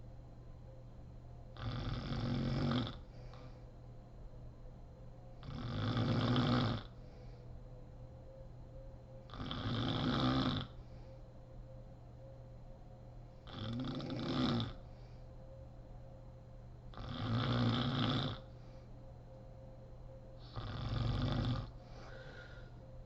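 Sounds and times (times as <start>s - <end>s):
woman snoring: 1.6s - 3.1s, 5.4s - 7.0s, 9.3s - 10.8s, 13.5s - 14.9s, 17.0s - 18.5s, 20.4s - 22.7s.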